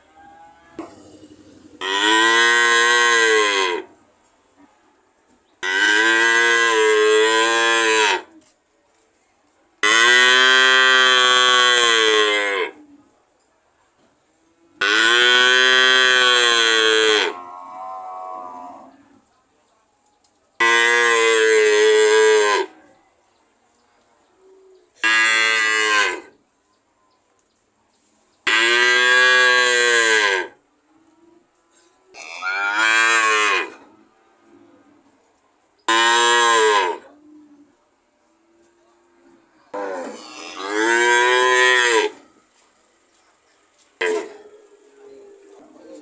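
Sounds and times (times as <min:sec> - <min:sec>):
cow mooing: 0:00.2 - 0:03.9, 0:14.8 - 0:19.0, 0:39.7 - 0:42.2.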